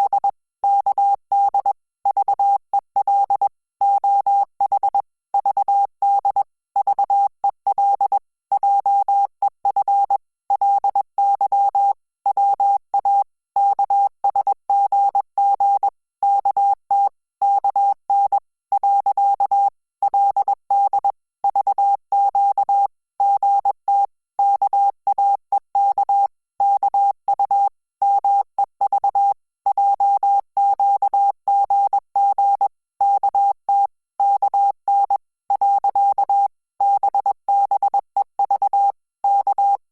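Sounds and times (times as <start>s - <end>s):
morse code beeps: 20.2s - 39.8s.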